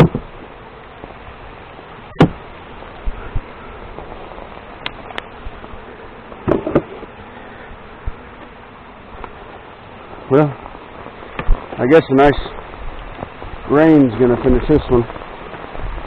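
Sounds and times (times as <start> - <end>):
sharp knocks: 0.0 - 0.3, 2.2 - 2.4, 6.4 - 6.9
honey bees buzzing: 0.0 - 16.0.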